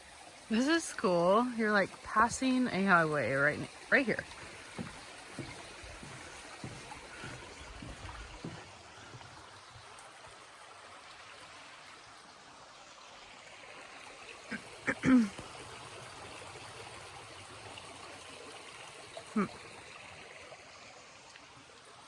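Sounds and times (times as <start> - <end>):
soft thumps: 4.2 - 8.7.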